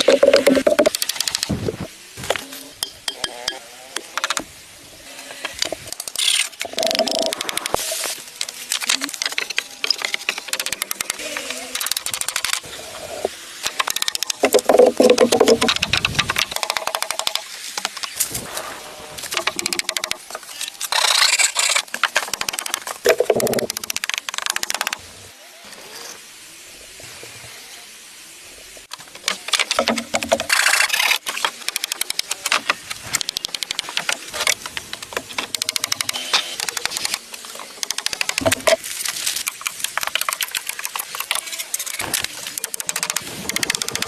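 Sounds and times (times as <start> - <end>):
tools clicking and knocking on wood: 0.0 - 1.5, 2.8 - 4.5, 13.7 - 18.2, 19.3 - 20.4, 31.2 - 38.8.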